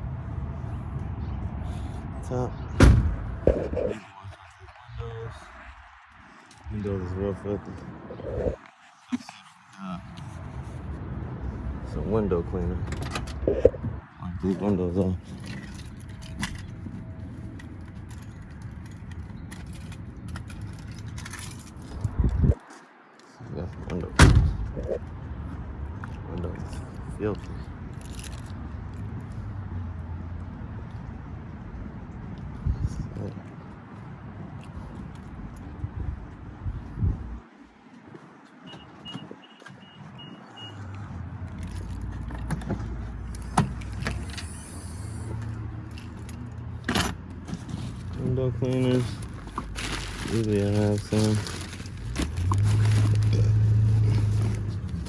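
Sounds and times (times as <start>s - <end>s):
steady low rumble: 0.0s - 5.9s, 34.2s - 37.4s
heavy thump: 2.8s - 3.8s
small clicks and jingles: 15.2s - 22.7s, 26.0s - 29.5s, 41.5s - 46.8s.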